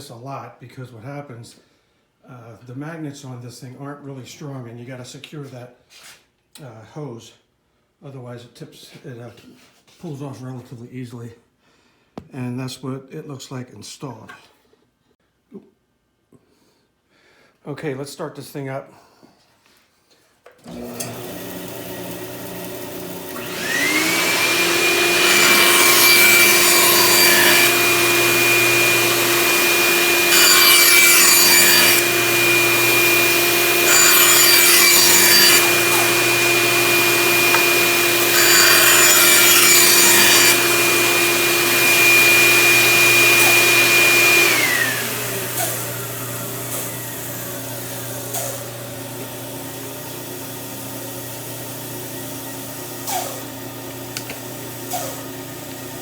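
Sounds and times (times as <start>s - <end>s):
bandsaw motor whine: 20.6s - 56.0s
dust extraction vacuum running: 20.6s - 56.0s
saw blade rasping through wood: 20.7s - 48.8s.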